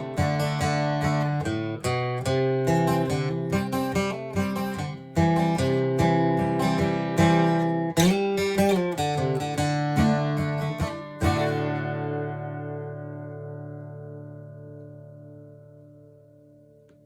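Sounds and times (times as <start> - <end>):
acoustic guitar chords: 0.0 - 17.0.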